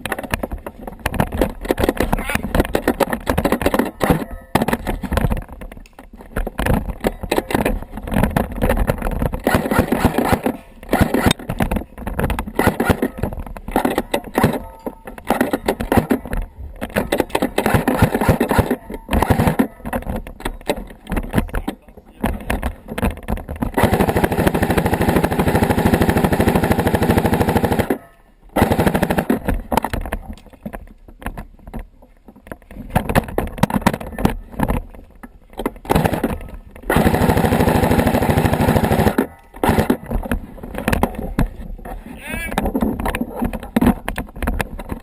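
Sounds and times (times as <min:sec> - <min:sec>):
airsoft guns firing bursts: 0:09.4 - 0:11.5, 0:12.5 - 0:19.7, 0:23.7 - 0:28.0, 0:28.6 - 0:29.6, 0:35.8 - 0:40.1.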